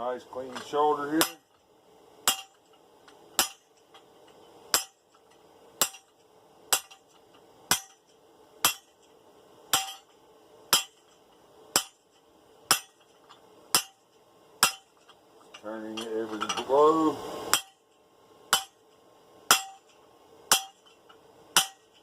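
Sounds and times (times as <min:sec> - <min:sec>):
hammer striking steel on anvil: 0:01.2 - 0:01.5, 0:02.2 - 0:02.6, 0:03.4 - 0:03.8, 0:04.7 - 0:05.1, 0:05.8 - 0:08.0, 0:08.6 - 0:09.0, 0:09.7 - 0:11.1, 0:11.7 - 0:12.1, 0:12.7 - 0:13.1, 0:13.7 - 0:14.0, 0:14.6 - 0:15.0, 0:17.5 - 0:17.8, 0:18.5 - 0:18.8, 0:19.5 - 0:19.9, 0:20.5 - 0:21.0, 0:21.6 - 0:22.0.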